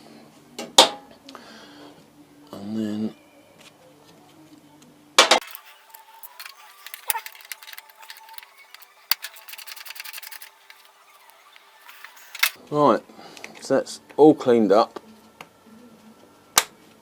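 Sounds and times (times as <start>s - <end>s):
metal hand tools clinking: 5.4s - 12.6s.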